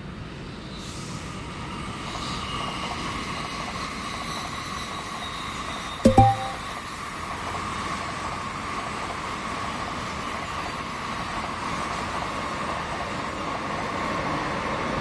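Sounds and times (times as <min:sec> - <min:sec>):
sharp knock with ring: 0:06.1 - 0:06.6.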